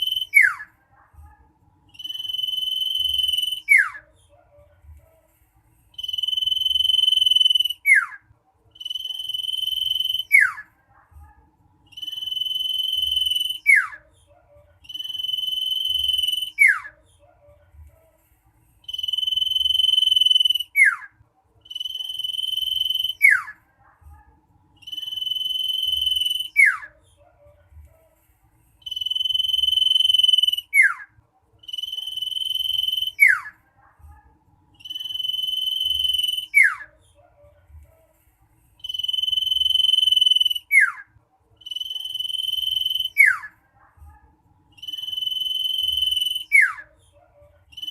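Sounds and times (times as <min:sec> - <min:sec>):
bird whistling song: 0:00.0 - 0:00.7, 0:01.9 - 0:04.0, 0:05.9 - 0:08.2, 0:08.8 - 0:10.6, 0:11.9 - 0:14.0, 0:14.8 - 0:17.0, 0:18.8 - 0:23.6, 0:24.8 - 0:26.9, 0:28.8 - 0:33.5, 0:34.8 - 0:36.9, 0:38.8 - 0:41.0, 0:41.6 - 0:43.5, 0:44.8 - 0:46.9.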